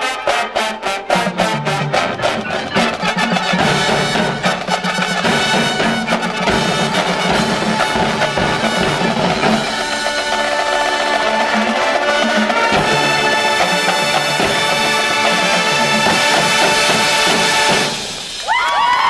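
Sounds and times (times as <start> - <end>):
marching band playing: 0.0 - 19.0.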